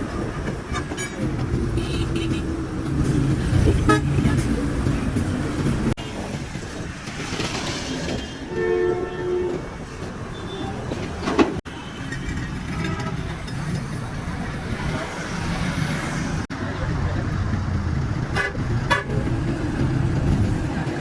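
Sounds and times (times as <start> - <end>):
roadside traffic: 0.0 - 21.0
vehicle horn: 1.8 - 2.5, 3.8 - 4.5, 8.5 - 9.6.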